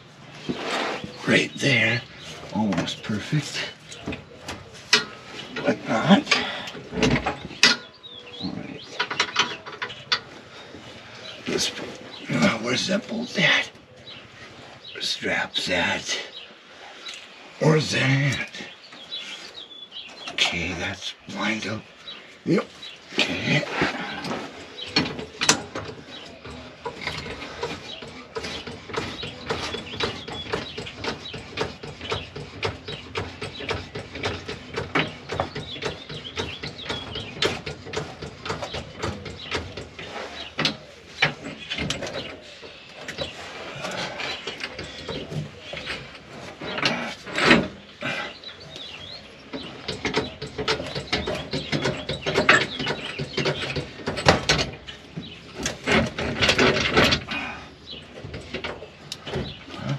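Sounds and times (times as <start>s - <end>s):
metal clanks from tools: 2.7s - 10.3s, 23.1s - 59.9s.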